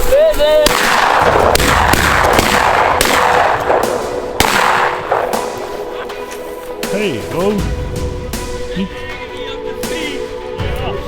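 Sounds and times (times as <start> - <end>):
shotgun shots: 0.6 - 6.0.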